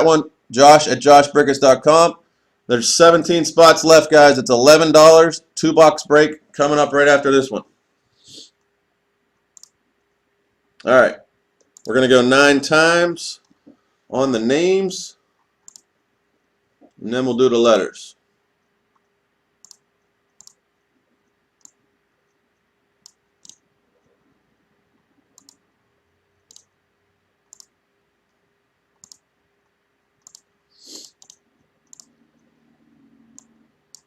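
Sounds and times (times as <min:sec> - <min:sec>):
faint steady hum: 0:00.0 - 0:34.0
computer mouse clicks: 0:09.4 - 0:09.8, 0:11.6 - 0:11.9, 0:15.4 - 0:15.9, 0:18.9 - 0:20.6, 0:21.2 - 0:22.4, 0:23.0 - 0:23.7, 0:25.3 - 0:25.6, 0:26.4 - 0:26.7, 0:27.5 - 0:27.8, 0:29.0 - 0:32.6, 0:33.3 - 0:34.0.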